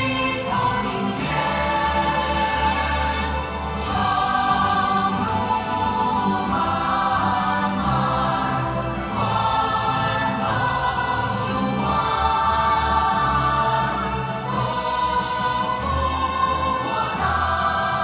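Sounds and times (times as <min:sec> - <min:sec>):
cast singing in chorus: 0:00.0 - 0:18.0.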